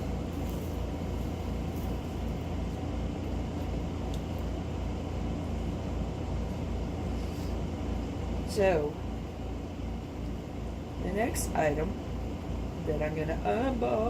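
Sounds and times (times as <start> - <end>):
machinery hum: 0.0 - 14.0.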